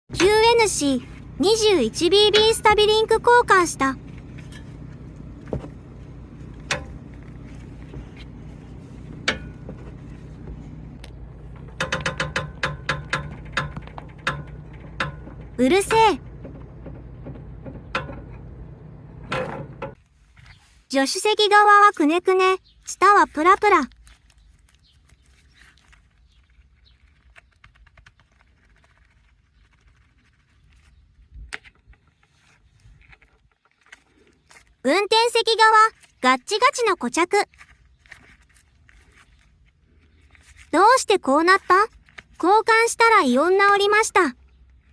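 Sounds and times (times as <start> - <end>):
car engine humming: 0.1 - 20.0
suspension links clacking: 1.2 - 20.0
clicks and knocks of metal parts: 11.5 - 18.5.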